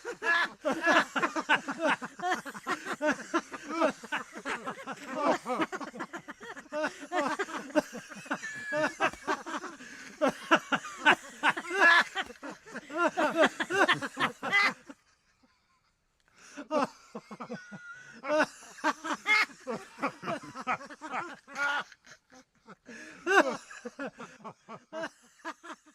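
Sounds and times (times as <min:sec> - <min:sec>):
person laughing: 0:00.0 - 0:14.8.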